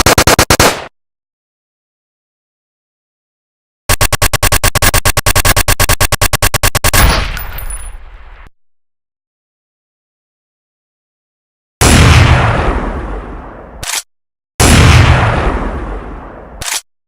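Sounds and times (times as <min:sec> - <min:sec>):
automatic gunfire: 0:00.0 - 0:00.9, 0:03.9 - 0:07.2.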